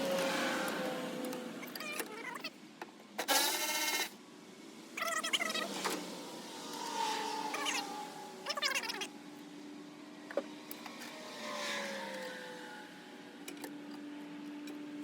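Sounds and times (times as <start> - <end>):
vehicle passing by: 0.0 - 1.8, 5.5 - 13.4.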